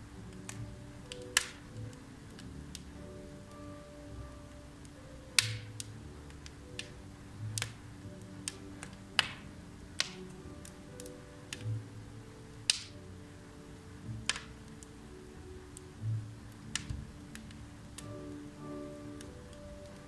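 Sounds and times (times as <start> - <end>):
logs crackling and popping in fireplace: 0.0 - 20.0
soft cafe music: 0.0 - 20.0.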